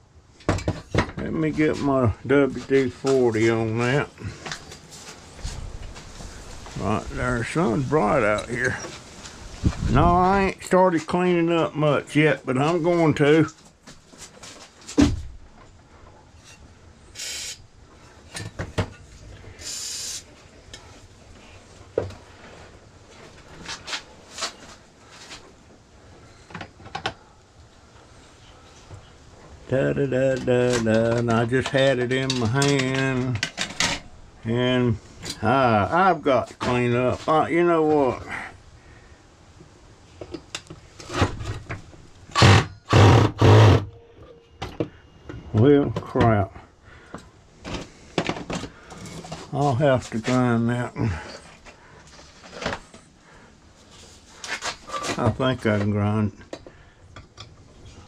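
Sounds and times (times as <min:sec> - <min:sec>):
short loud hissing bursts: 0:17.1 - 0:17.6, 0:19.5 - 0:20.4.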